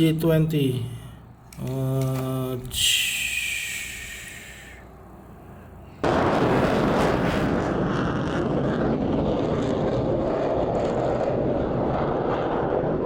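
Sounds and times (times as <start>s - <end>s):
jet engine rushing: 6.0s - 13.0s.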